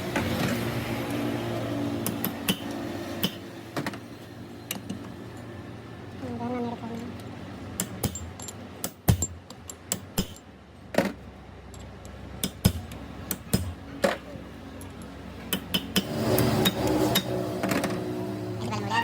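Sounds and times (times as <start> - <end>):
sharp metallic knocks and clinks: 7.8 - 10.5.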